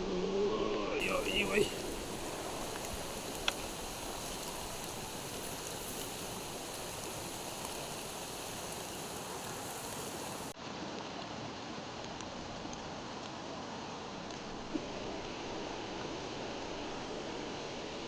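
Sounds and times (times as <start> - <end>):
river water rushing: 1.0 - 10.6.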